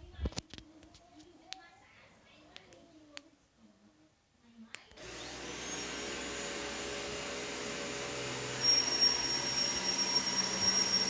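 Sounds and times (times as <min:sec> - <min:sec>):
robot vacuum whirring: 0:05.0 - 0:11.0
high whistle of drive wheel: 0:08.0 - 0:11.0.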